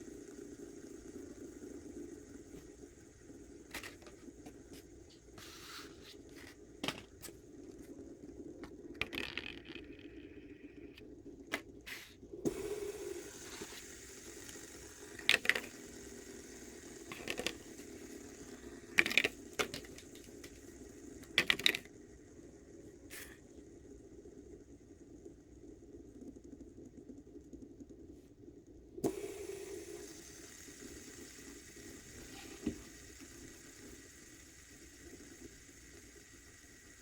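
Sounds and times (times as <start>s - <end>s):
faint steady hum: 0.0s - 37.0s
handling clicks and scrapes: 15.2s - 15.7s, 17.1s - 17.8s, 19.0s - 20.6s, 21.2s - 21.9s.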